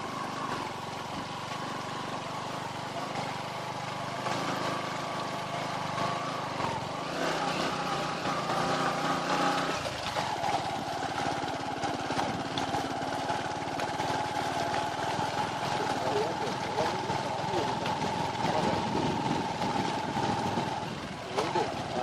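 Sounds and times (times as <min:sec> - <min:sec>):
vehicle engine running: 0:00.0 - 0:22.0.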